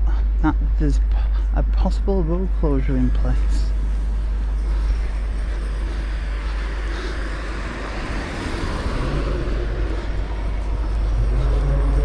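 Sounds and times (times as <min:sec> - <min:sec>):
steady low rumble: 0:00.0 - 0:12.0
road traffic passing: 0:03.6 - 0:12.0.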